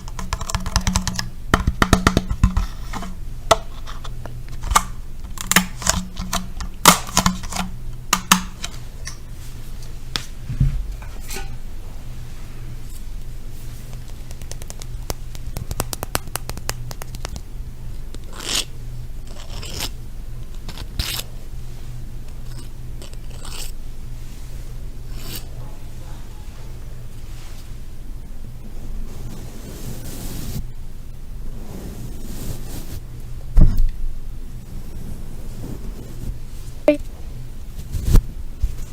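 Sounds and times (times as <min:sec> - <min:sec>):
tapping on objects: 0:00.0 - 0:02.7
low hum: 0:02.2 - 0:38.9
scratching strokes: 0:29.0 - 0:30.7, 0:31.4 - 0:33.2, 0:34.6 - 0:36.9.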